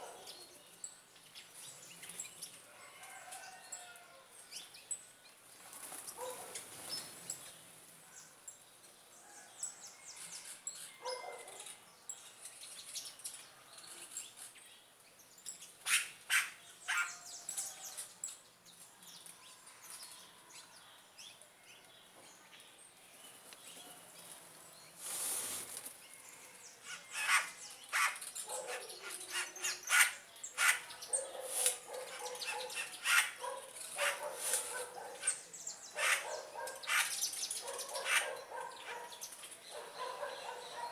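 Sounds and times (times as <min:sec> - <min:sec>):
birds chirping: 0:26.4 - 0:40.9.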